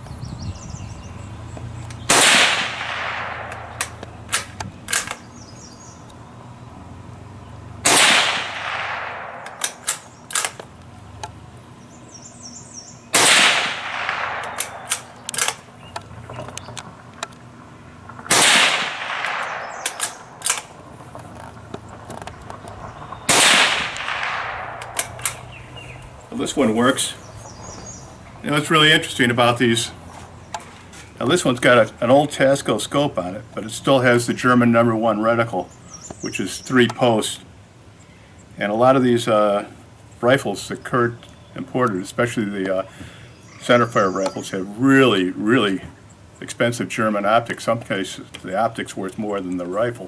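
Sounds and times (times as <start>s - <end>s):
rifle shots echoing: 2.0s - 5.3s, 7.8s - 10.6s, 13.1s - 15.7s, 18.2s - 20.8s, 23.2s - 25.5s
metallic clicks of rifle action: 3.0s - 5.3s, 8.6s - 11.4s, 13.9s - 17.5s, 19.0s - 22.8s, 23.8s - 25.5s.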